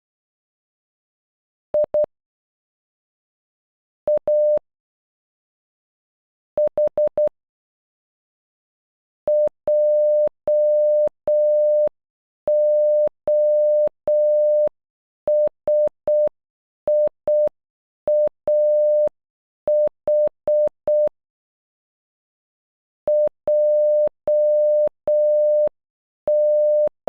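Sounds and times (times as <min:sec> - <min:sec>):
morse code beeps: 0:09.3 - 0:11.9, 0:12.5 - 0:14.7, 0:18.1 - 0:19.1, 0:23.1 - 0:25.7, 0:26.3 - 0:26.9.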